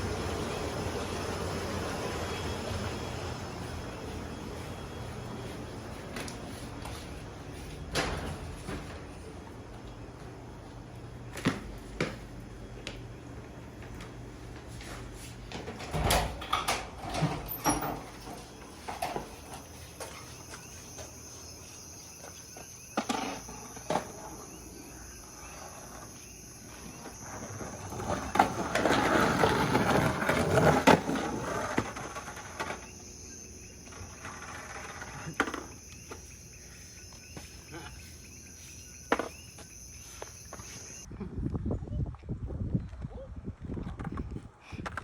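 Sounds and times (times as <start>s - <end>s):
steady high-pitched whine: 0.0s - 14.8s.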